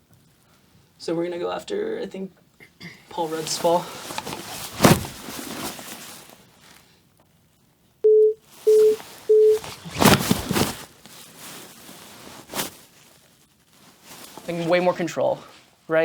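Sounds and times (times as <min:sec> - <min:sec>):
heavy thuds of body fall: 0:04.1 - 0:05.8, 0:09.5 - 0:10.9
short cue beeps: 0:08.1 - 0:09.6.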